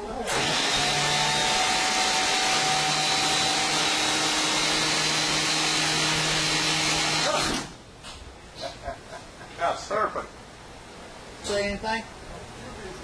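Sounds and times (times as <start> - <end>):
electric motor whine: 0.3 - 7.7.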